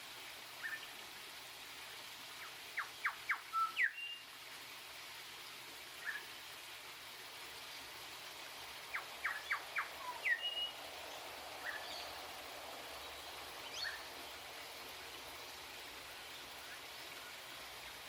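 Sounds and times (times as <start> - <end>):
steady background hiss: 0.0 - 18.0
bird calling with whistled notes: 0.6 - 0.9, 2.4 - 4.3, 6.0 - 6.3, 8.9 - 10.8, 11.6 - 12.1, 13.7 - 14.1.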